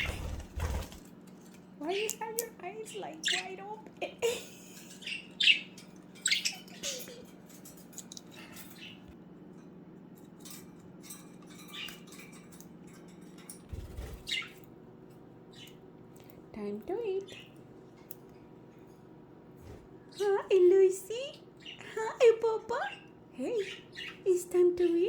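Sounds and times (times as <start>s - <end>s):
steady low hum: 0.0s - 25.0s
budgerigars chirping: 2.9s - 3.7s, 4.9s - 7.2s, 14.1s - 14.7s, 15.5s - 15.8s, 22.9s - 24.3s.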